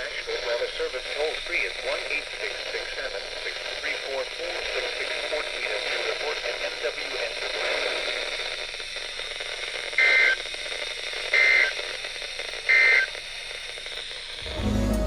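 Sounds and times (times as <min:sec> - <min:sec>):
radio receiver hiss: 0:00.0 - 0:15.0
music: 0:14.4 - 0:15.0.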